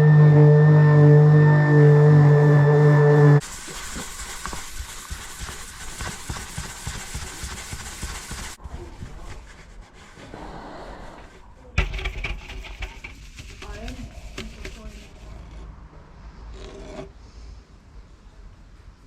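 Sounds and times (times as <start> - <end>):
sanding rasping hiss: 3.4 - 8.6, 13.0 - 15.4
quiet rubbing: 8.6 - 17.4.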